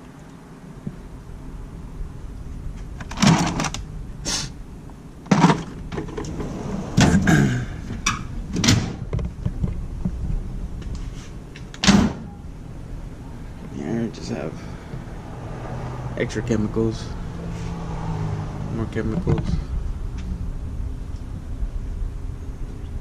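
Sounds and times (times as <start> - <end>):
drawers knocking shut: 5.3 - 7.5, 8.5 - 9.1
metal drawers sliding: 5.3 - 9.1.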